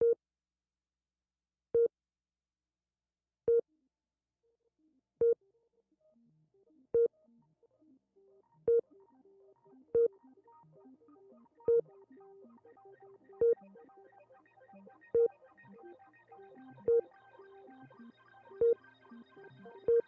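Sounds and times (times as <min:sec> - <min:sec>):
faint synthesizer music: 0:06.0 - 0:20.0.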